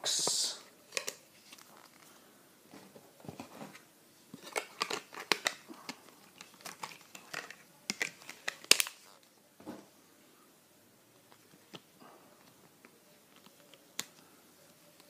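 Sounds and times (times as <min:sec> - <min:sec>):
plastic case clicks and creaks: 0:04.4 - 0:05.6.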